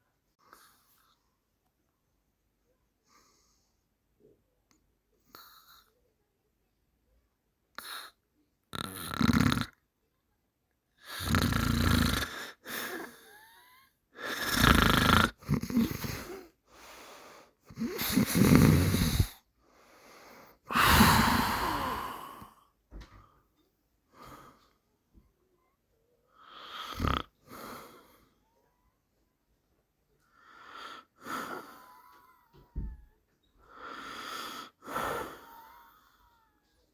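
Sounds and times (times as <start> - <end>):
man snoring: 8.8 - 9.7, 11.1 - 12.6, 14.3 - 16.4, 17.7 - 19.4, 20.7 - 22.5, 26.6 - 27.3
soft breathing: 15.8 - 28.9.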